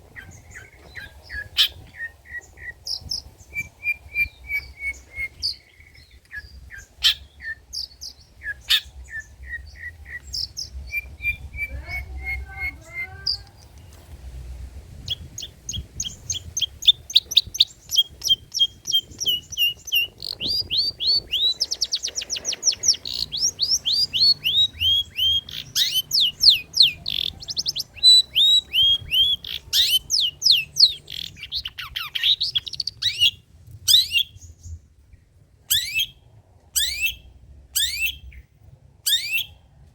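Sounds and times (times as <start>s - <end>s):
shrike singing: 0.2s - 13.9s, 15.1s - 33.4s.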